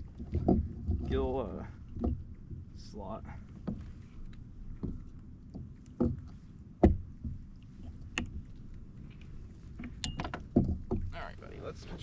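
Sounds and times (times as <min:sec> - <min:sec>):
knocks on a kayak hull: 0:06.8 - 0:07.4.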